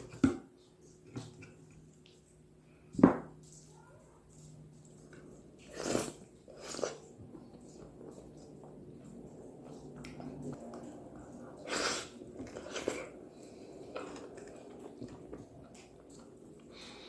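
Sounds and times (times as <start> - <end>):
wet chewing of juicy fruit: 4.3 - 17.0.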